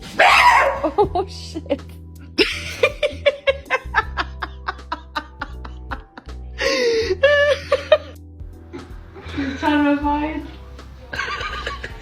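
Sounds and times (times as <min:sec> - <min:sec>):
background music with quick beat: 0:08.4 - 0:12.0.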